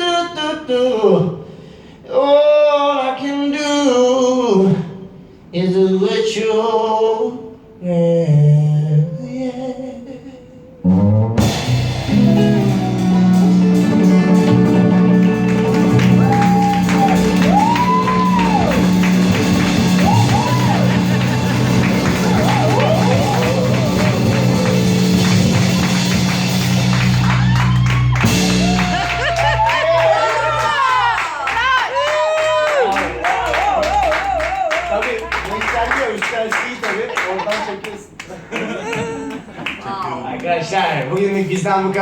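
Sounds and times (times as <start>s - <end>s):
bass: 7.4s - 36.2s
electric guitar bending notes: 10.9s - 29.6s
drums with cymbals: 11.4s - 29.4s.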